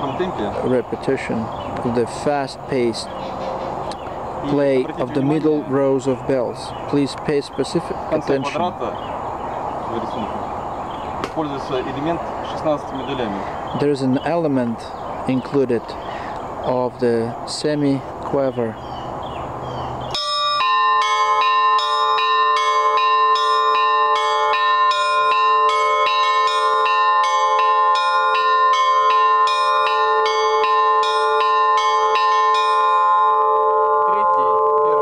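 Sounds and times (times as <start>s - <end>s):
church bells ringing: 0.0s - 1.3s, 20.1s - 35.0s
hum of larger bells: 0.0s - 3.3s, 17.9s - 35.0s.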